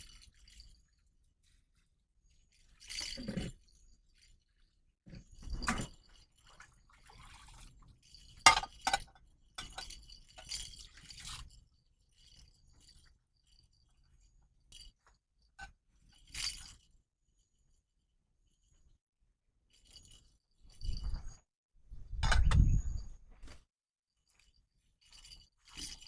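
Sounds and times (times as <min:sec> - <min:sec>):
objects clinking and knocking: 0:08.2 - 0:10.8, 0:22.2 - 0:23.6.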